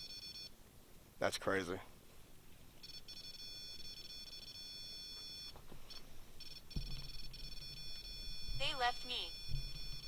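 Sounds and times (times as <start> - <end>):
electronic alarm tone: 0.0 - 0.5, 2.8 - 5.5, 6.4 - 10.0.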